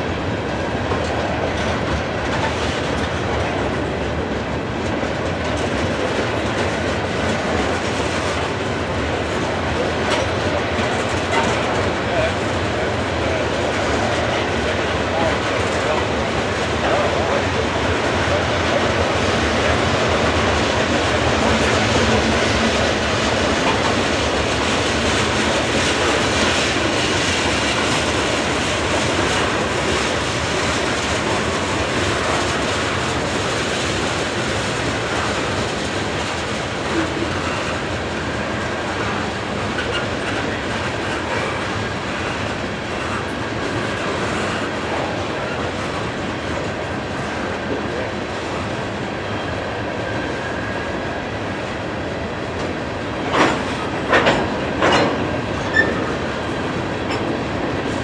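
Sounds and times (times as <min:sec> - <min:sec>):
freight cars clacking over rail joints: 0:09.8 - 0:34.1, 0:52.6 - 0:58.0.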